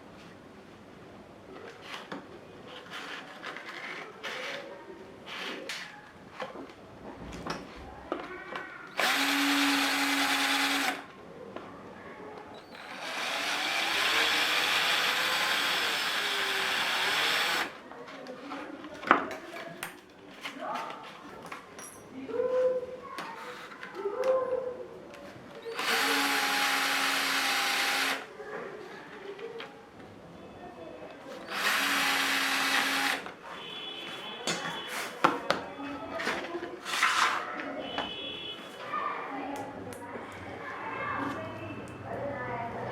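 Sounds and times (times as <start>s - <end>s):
electric drill running: 9.0s - 11.0s, 12.7s - 17.8s, 25.7s - 28.3s, 31.5s - 33.2s.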